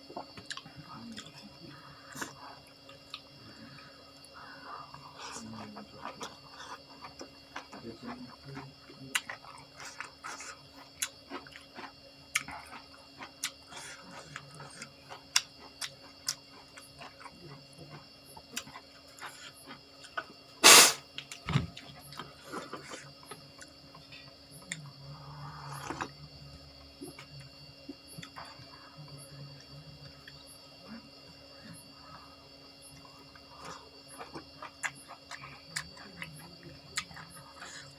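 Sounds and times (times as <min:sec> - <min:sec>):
wet chewing and crunching: 0:00.0 - 0:03.4, 0:04.1 - 0:20.4, 0:32.9 - 0:37.9.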